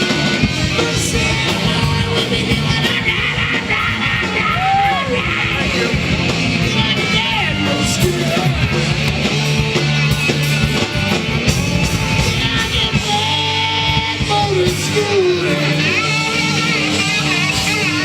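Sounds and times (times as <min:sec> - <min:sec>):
rock band playing: 0:00.0 - 0:18.0
person singing: 0:11.5 - 0:18.0.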